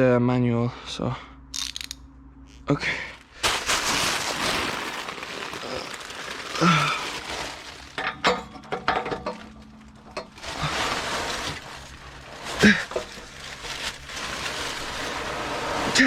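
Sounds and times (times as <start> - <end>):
wrench sharp clicks: 1.5 - 2.0.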